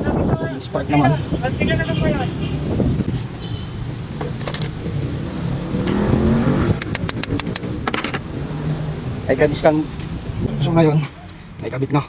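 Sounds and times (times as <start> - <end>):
vehicle engine rumbling: 0.0 - 12.0
sharp metallic clicks: 5.8 - 8.8.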